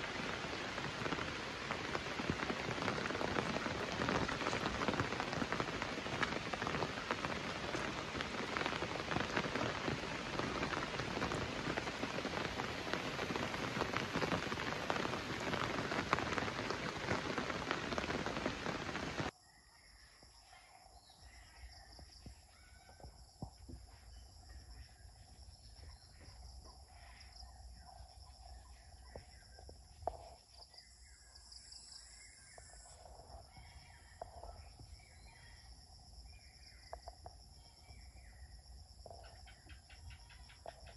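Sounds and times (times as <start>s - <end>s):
heavy rain falling: 0.0s - 19.3s
insects chirring: 0.0s - 40.9s.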